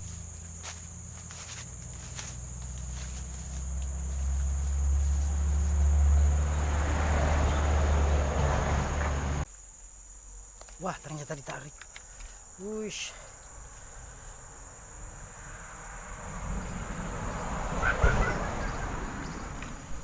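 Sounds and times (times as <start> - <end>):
insects chirring: 0.0 - 20.0.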